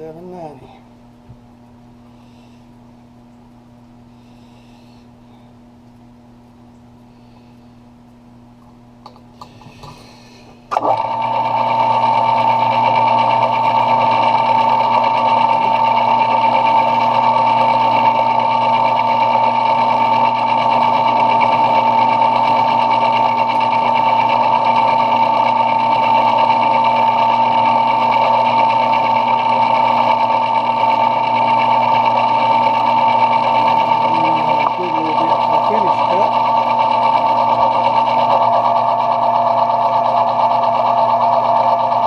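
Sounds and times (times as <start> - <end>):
metal lathe whining: 10.7 - 42.0.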